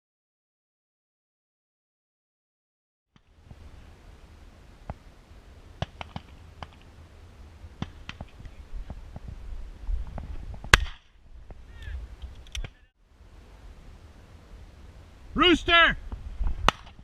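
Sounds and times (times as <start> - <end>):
wind on microphone: 6.4 - 14.0, 16.0 - 17.0.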